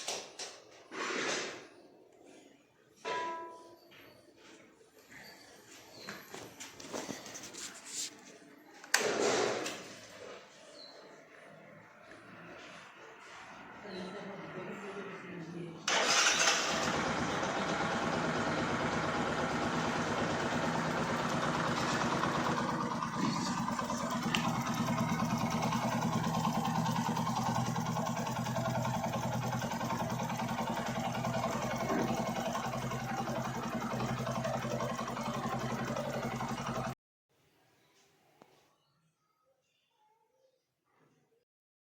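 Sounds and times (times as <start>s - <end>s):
motorcycle engine idling: 15.9s - 37.0s.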